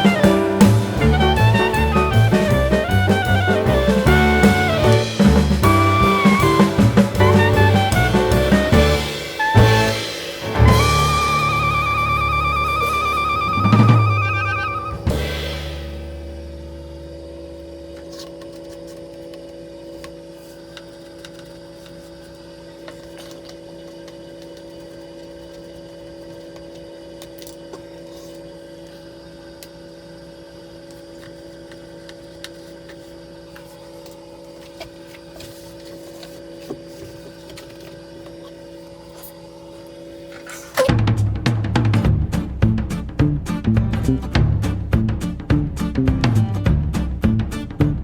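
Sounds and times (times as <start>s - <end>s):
music hit: 0.0s - 16.6s
mechanical hum: 0.0s - 43.8s.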